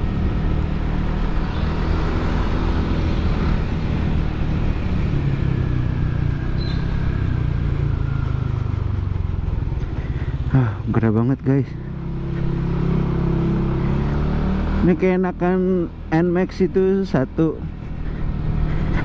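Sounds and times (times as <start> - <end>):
scooter engine running: 0.0 - 10.9.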